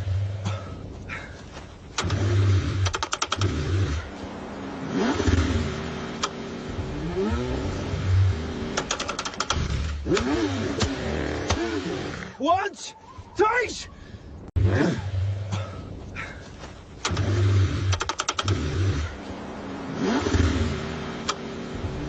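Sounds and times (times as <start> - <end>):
car engine cranking: 1.8 - 12.4, 16.6 - 22.0
rapid clicking: 2.0 - 3.6, 8.7 - 11.6, 17.0 - 18.6.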